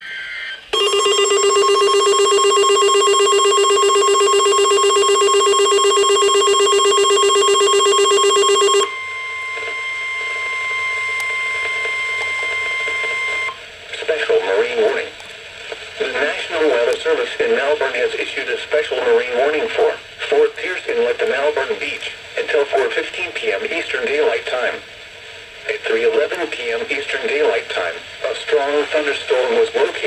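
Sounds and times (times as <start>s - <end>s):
steady single-pitch warning tone: 0.0s - 13.6s
pulsing electronic alarm tone: 0.3s - 13.6s.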